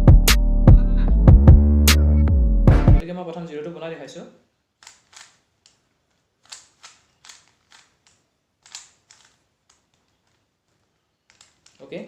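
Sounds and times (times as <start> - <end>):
plastic cube clicks: 4.8 - 10.5, 11.2 - 11.9.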